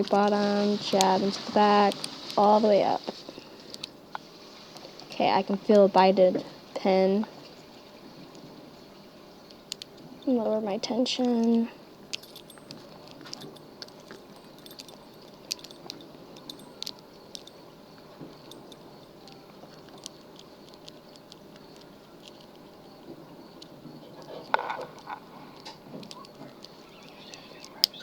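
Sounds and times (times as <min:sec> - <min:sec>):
lock pick clicking: 0:09.4 - 0:10.0, 0:11.2 - 0:23.7, 0:25.0 - 0:28.0.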